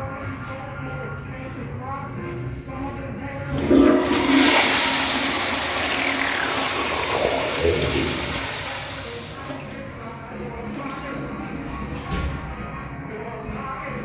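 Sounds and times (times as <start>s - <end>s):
toilet flushing: 3.5s - 12.5s.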